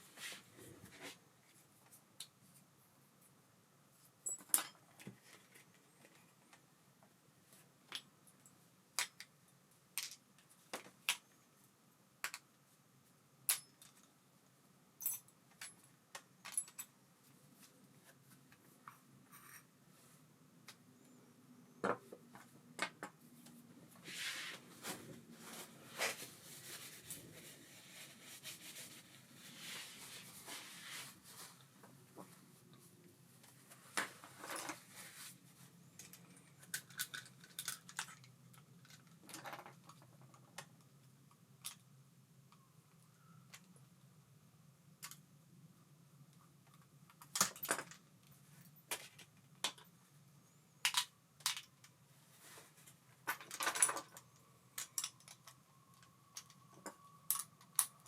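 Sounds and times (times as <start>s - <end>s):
small metal parts clicking and clinking: 15.0s - 17.0s, 36.0s - 40.4s, 53.3s - 58.0s.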